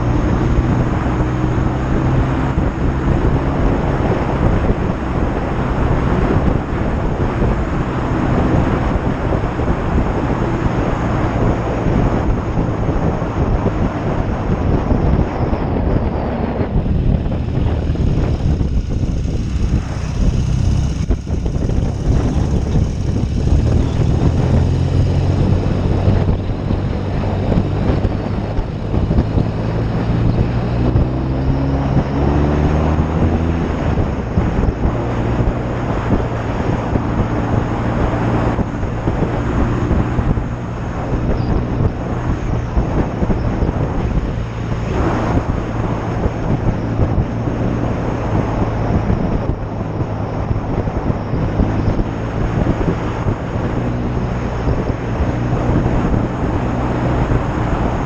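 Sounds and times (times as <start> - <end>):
motorcycle engine running: 0.0 - 58.0
wind rushing over microphone: 0.0 - 58.0.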